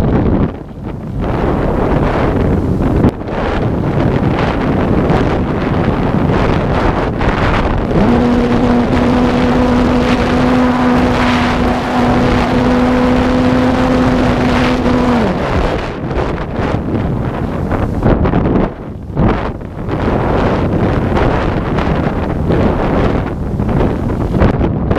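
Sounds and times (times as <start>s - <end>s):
mid-pitched drone: 0.0s - 24.2s
wind buffeting microphone: 0.0s - 24.9s.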